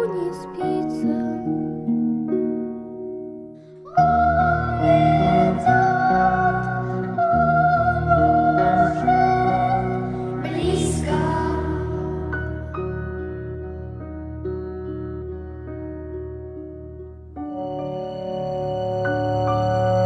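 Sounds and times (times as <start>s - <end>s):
low bass: 4.0s - 20.0s.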